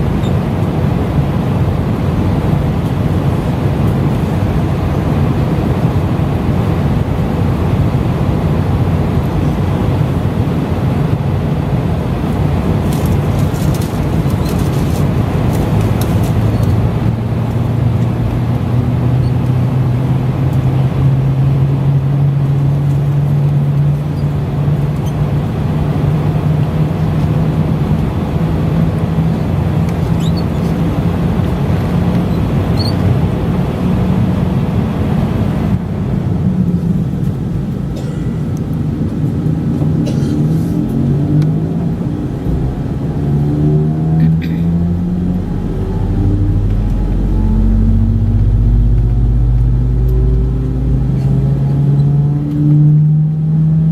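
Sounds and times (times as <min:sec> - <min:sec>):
airliner cabin engine rush: 0:00.0 - 0:52.6
low hum rising in pitch: 0:34.8 - 0:53.9
rising tones: 0:40.5 - 0:51.0.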